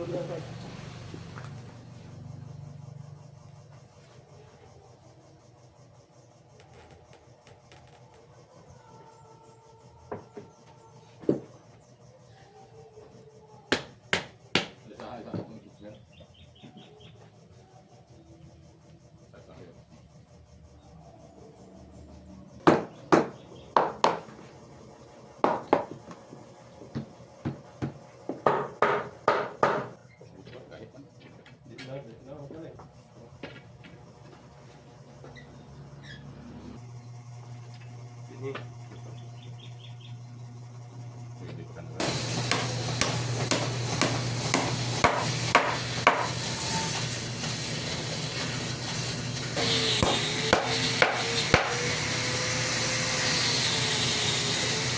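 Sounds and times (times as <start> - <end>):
steady low hum: 0.0 - 28.3
hammer blows on wood: 13.7 - 14.8, 42.0 - 47.6, 48.4 - 52.6.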